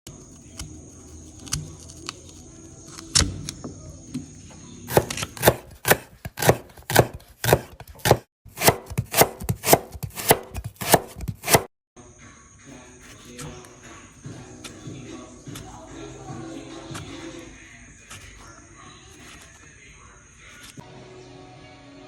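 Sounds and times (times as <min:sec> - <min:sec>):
knife chopping on cutting board: 0:04.9 - 0:11.7, 0:16.8 - 0:17.4.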